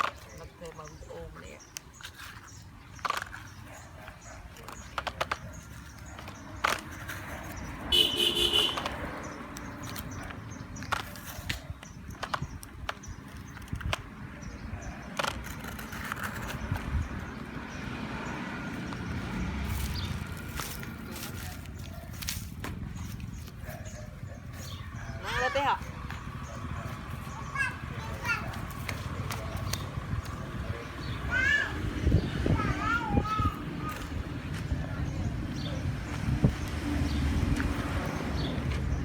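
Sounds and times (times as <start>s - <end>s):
horn toot: 7.9s - 9.1s.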